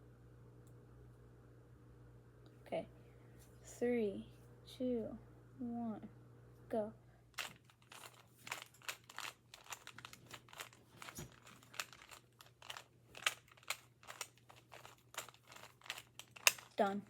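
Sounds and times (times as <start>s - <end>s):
puzzle cube clicking as turned: 7.4s - 16.8s.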